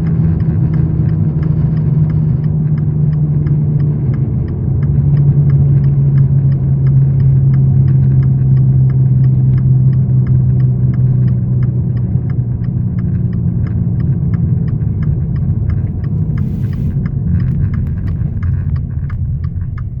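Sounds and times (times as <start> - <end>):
light ticking rattle: 0.0 - 20.0
low hum: 9.4 - 20.0.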